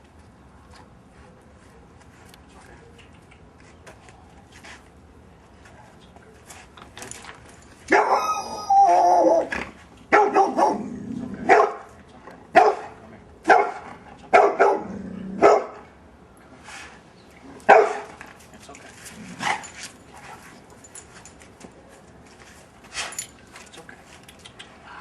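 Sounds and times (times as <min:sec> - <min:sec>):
dog barking sharply: 0:07.9 - 0:08.2, 0:10.1 - 0:10.8, 0:12.6 - 0:14.8, 0:17.7 - 0:18.1.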